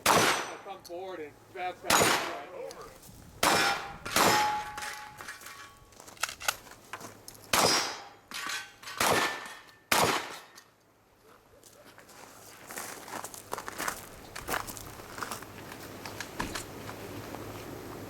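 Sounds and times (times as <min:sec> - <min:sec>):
shotgun shots: 0:00.0 - 0:00.6, 0:01.9 - 0:02.5, 0:03.4 - 0:05.1, 0:07.5 - 0:08.1, 0:09.0 - 0:10.5
steel targets clanging: 0:01.9 - 0:02.5, 0:03.4 - 0:05.8, 0:07.6 - 0:10.6.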